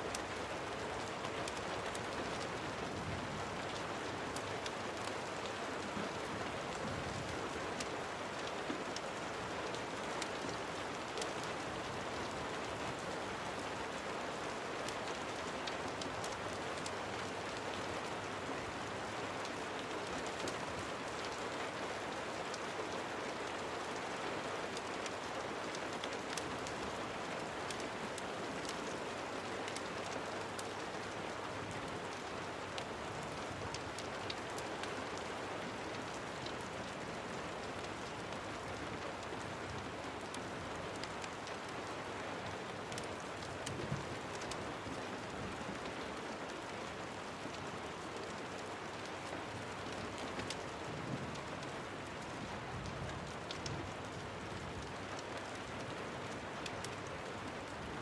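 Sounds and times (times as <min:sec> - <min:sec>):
steady rain falling: 0:00.0 - 0:58.0
small sharp ticks: 0:52.8 - 0:53.8.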